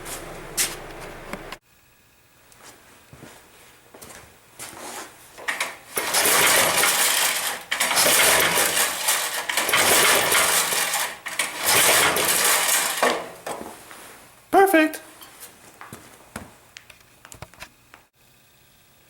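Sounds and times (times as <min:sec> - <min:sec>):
metal roller chain clattering: 0:05.4 - 0:13.7.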